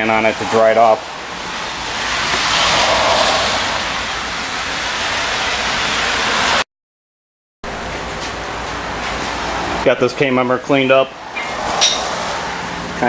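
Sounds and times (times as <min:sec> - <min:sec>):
water spraying from a hose: 0:01.5 - 0:05.6.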